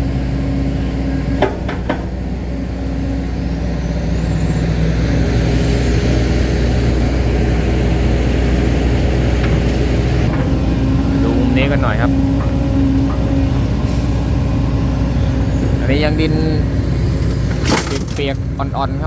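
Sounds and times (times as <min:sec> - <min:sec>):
excavator diesel engine running: 0:00.0 - 0:19.0
sharp metal knocks: 0:01.3 - 0:02.4, 0:09.4 - 0:13.7.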